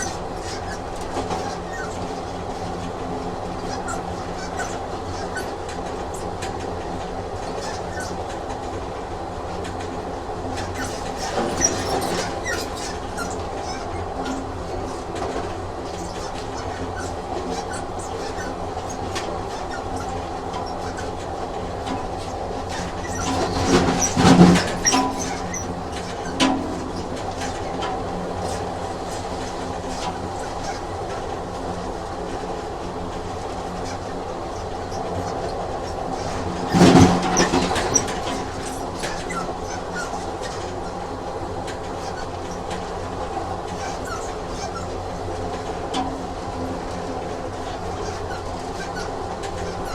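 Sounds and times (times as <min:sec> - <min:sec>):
short high squeaks: 0:00.0 - 0:02.5, 0:03.6 - 0:08.3, 0:10.6 - 0:21.2, 0:22.0 - 0:27.8, 0:29.9 - 0:31.2, 0:33.8 - 0:41.0, 0:41.9 - 0:42.8, 0:43.7 - 0:45.0, 0:47.6 - 0:49.9
train rumbling on rails: 0:00.0 - 0:49.9
wheels clicking on rails: 0:00.0 - 0:49.9.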